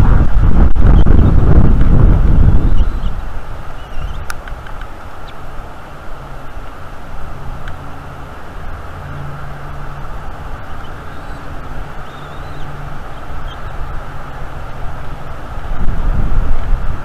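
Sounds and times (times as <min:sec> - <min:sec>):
strong wind buffeting microphone: 0:00.0 - 0:17.0
faint bird chirps: 0:02.6 - 0:03.2, 0:03.8 - 0:04.3, 0:10.6 - 0:13.8.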